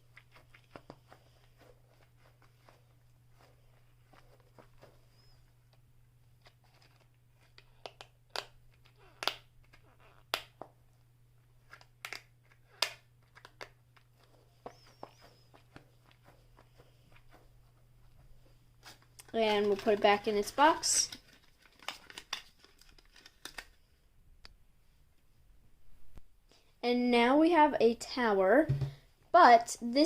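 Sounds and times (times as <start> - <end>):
faint steady hum: 0.0 - 30.0
toys and packaging clicking and crinkling: 6.4 - 10.6, 11.6 - 15.9, 18.9 - 23.9.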